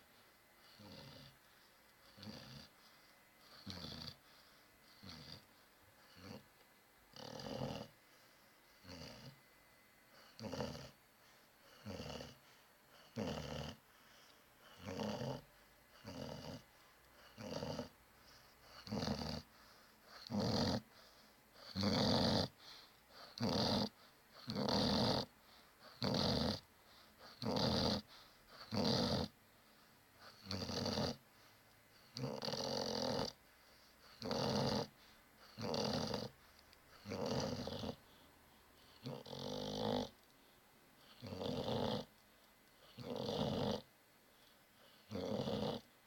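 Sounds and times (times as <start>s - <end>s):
person snoring: 0.7s - 1.4s, 3.5s - 4.2s, 7.1s - 7.9s, 10.2s - 11.0s, 11.7s - 12.4s, 13.0s - 13.8s, 14.7s - 16.6s, 17.2s - 17.9s, 18.6s - 19.4s, 20.1s - 20.8s, 21.6s - 22.5s, 23.2s - 25.3s, 25.9s - 26.6s, 27.2s - 29.3s, 30.3s - 31.2s, 32.2s - 33.4s, 34.1s - 36.3s, 37.0s - 38.0s, 38.8s - 40.1s, 41.0s - 42.1s, 42.8s - 43.8s, 44.8s - 45.8s.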